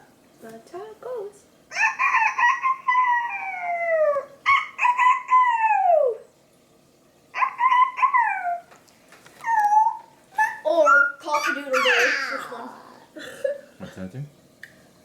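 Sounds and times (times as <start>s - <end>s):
dog howling: 1.8s - 6.2s, 7.4s - 8.7s.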